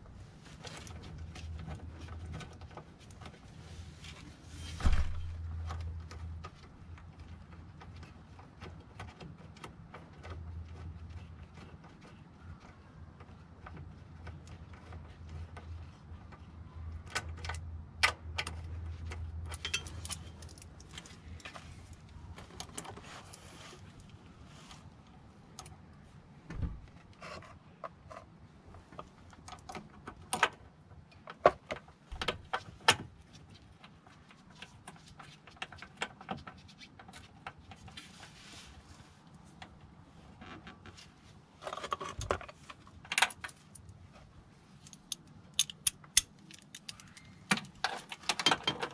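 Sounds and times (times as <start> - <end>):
metal tools clinking: 19.5 - 21.5.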